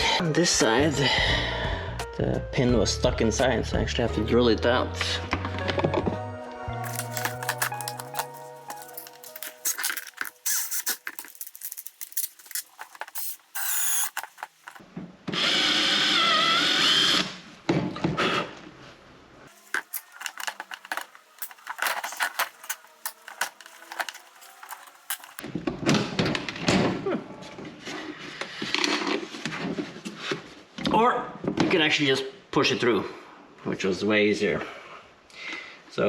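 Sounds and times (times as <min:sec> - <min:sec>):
handling clicks and knocks: 0:06.8 - 0:14.8, 0:19.5 - 0:25.4
power drill drilling: 0:09.0 - 0:14.8, 0:15.4 - 0:17.3.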